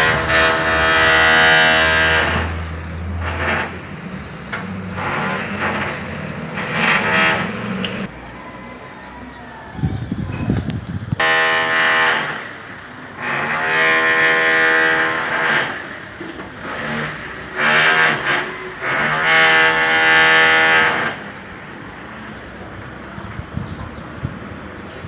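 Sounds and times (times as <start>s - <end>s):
demolition hammer breaking concrete: 0.0s - 8.1s, 11.2s - 21.3s.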